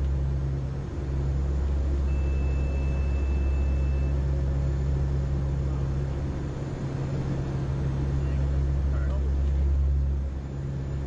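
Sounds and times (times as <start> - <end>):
aircraft engine drone: 0.0 - 11.0
faint high whine: 1.9 - 4.4.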